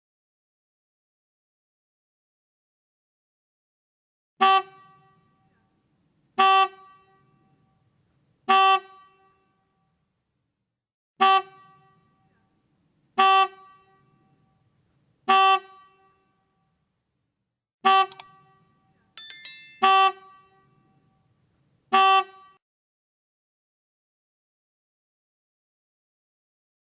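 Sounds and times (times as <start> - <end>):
car horn toots: 4.4 - 5.2, 17.8 - 18.6, 19.8 - 20.7, 22.0 - 22.6.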